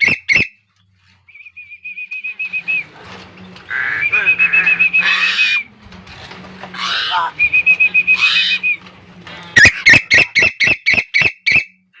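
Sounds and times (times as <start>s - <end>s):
sharp bird notes: 9.6s - 11.8s.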